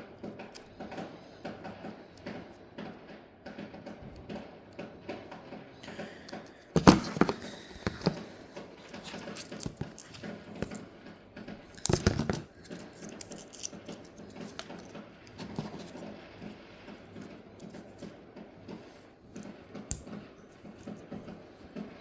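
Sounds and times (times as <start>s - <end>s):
packaging clicks and rustles: 5.8s - 10.9s, 11.6s - 18.2s.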